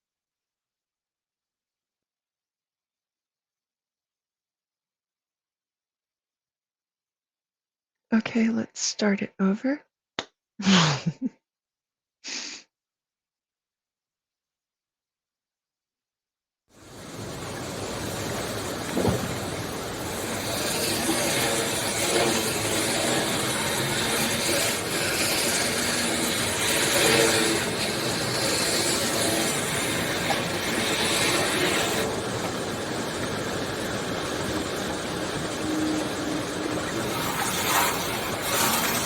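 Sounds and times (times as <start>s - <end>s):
steady rushing noise: 16.8s - 39.0s.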